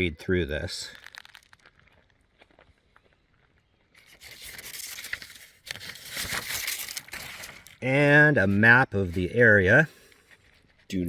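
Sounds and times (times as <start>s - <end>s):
rustling handling noise: 0.9s - 2.1s, 3.9s - 7.8s.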